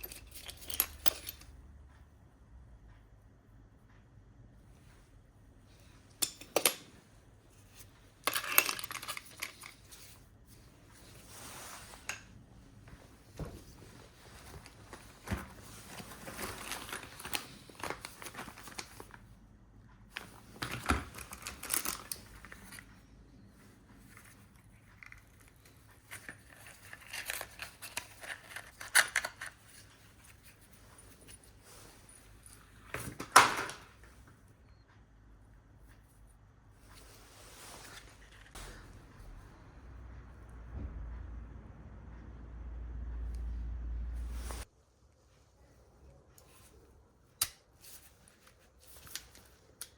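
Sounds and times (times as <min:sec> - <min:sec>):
rustling and crinkling: 0:06.8 - 0:19.4, 0:20.1 - 0:34.4, 0:36.8 - 0:38.9, 0:44.2 - 0:49.9.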